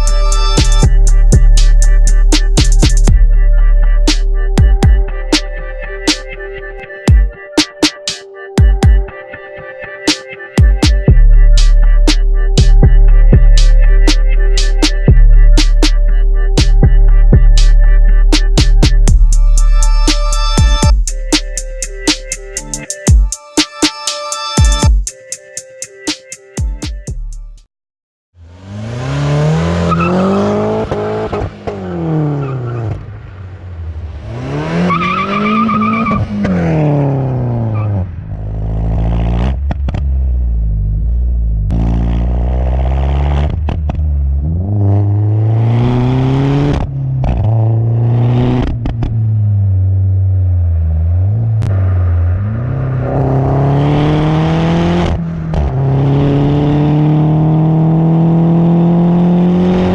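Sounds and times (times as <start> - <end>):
car engine revving: 28.4 - 59.9.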